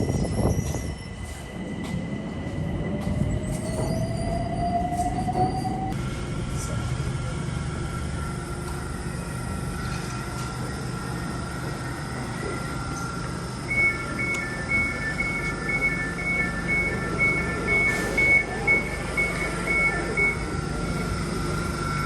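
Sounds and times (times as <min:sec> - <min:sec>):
train humming: 0:00.0 - 0:22.0
two-tone door warning beeps: 0:12.2 - 0:22.0.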